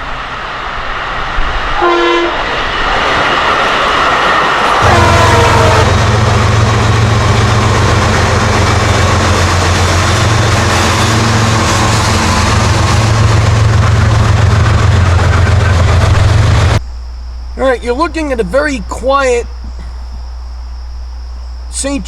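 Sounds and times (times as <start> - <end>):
train wheels rolling on rails: 0.0 - 16.9
locomotive engine drone: 0.0 - 22.0
train horn: 1.7 - 2.9, 4.7 - 16.5.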